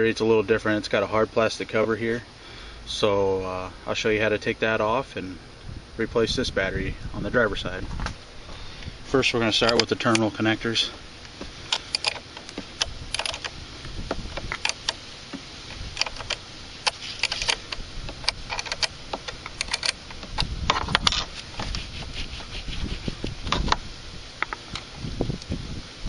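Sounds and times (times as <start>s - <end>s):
metal rattling: 9.3s - 22.0s
hand tools clicking on metal: 9.5s - 15.0s, 15.7s - 21.8s.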